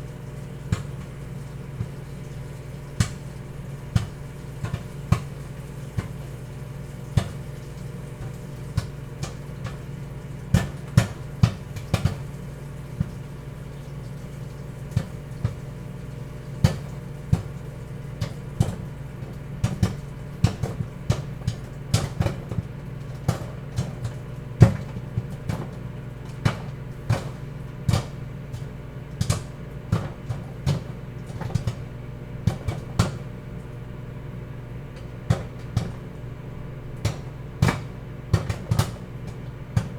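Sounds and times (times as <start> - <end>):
microwave oven humming: 0.0 - 39.9
popcorn popping: 0.0 - 39.9.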